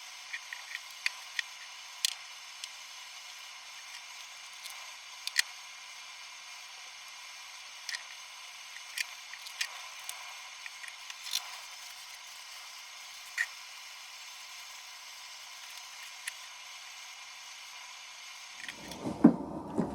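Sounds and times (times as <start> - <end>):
steady hiss: 9.6 - 19.9.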